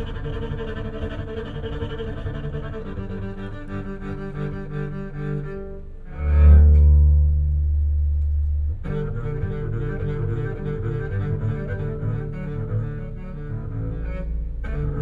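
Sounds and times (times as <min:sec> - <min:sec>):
bowed strings and double bass music: 0:00.0 - 0:15.0
loud deep bass note: 0:06.4 - 0:11.1.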